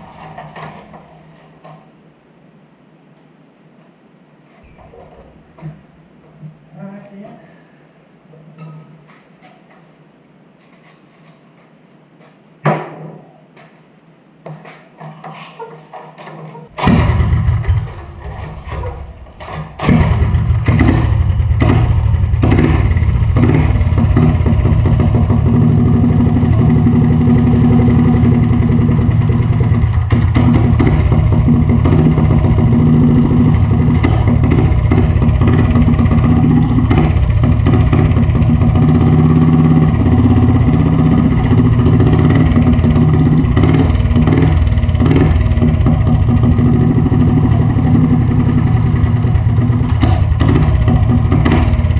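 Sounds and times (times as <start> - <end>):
mini bike engine starting: 16.8 - 51.9.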